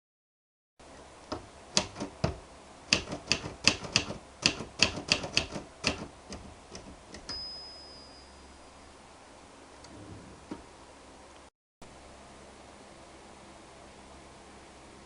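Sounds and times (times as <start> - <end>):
typewriter key strikes: 1.3 - 7.4
typewriter margin bell ring: 7.3 - 8.4.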